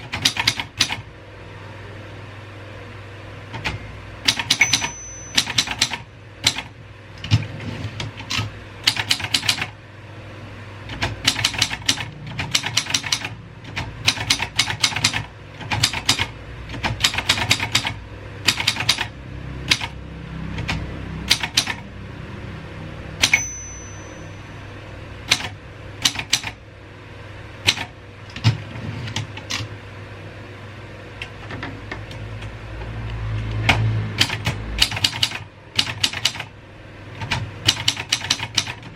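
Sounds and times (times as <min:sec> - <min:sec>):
typewriter key strikes: 0:00.0 - 0:01.0, 0:03.6 - 0:06.7, 0:10.9 - 0:19.1, 0:23.2 - 0:23.6, 0:25.3 - 0:26.6, 0:34.2 - 0:36.5, 0:37.2 - 0:38.9
typewriter bell ring: 0:04.3 - 0:06.0, 0:23.2 - 0:24.6.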